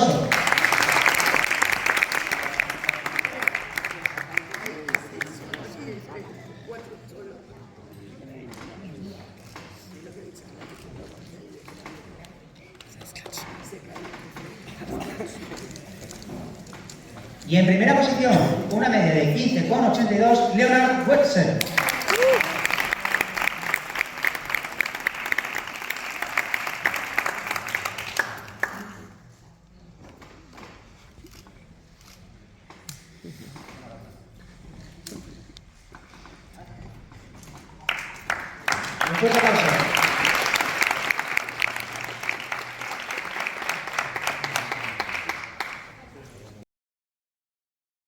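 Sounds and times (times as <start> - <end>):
audience applauding: 0.0 - 5.7, 21.6 - 29.1, 37.8 - 46.1.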